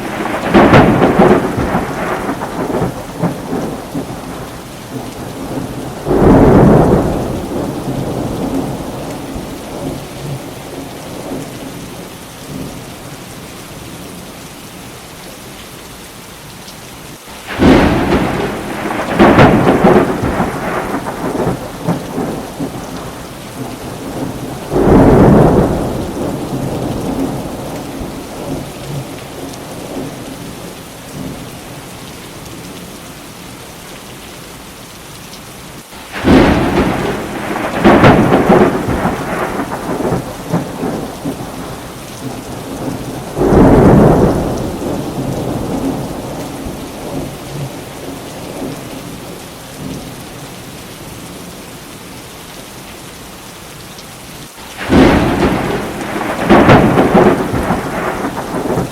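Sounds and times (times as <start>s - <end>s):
thunder rumbling: 0.0s - 11.7s, 17.4s - 31.4s, 36.0s - 50.0s, 54.7s - 58.9s
steady rain falling: 0.0s - 58.9s.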